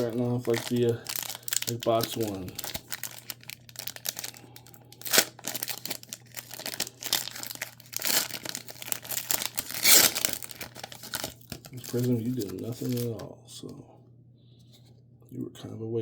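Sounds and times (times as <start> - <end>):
card wrappers crinkling: 0.0 - 13.3
cards being handled: 5.0 - 13.3.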